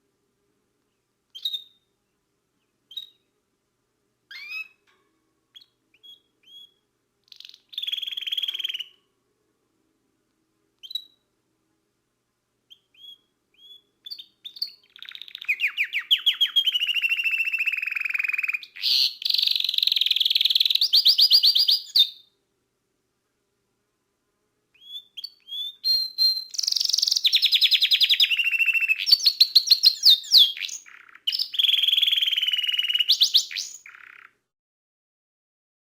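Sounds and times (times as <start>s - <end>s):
canary singing: 0.9s - 2.0s, 2.6s - 3.3s, 4.3s - 9.1s, 10.8s - 11.3s, 12.7s - 22.4s, 24.7s - 34.4s.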